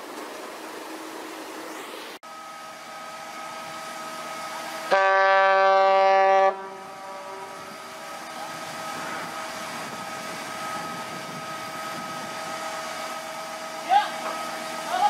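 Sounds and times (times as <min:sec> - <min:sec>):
ship's horn blast: 0:04.9 - 0:07.8.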